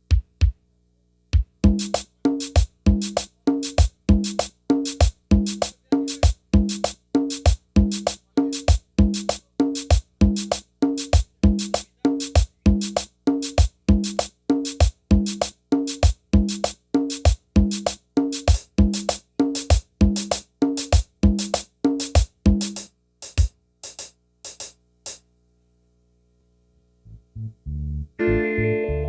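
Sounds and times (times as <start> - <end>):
drum hits: 0.0 - 0.6, 1.3 - 25.2.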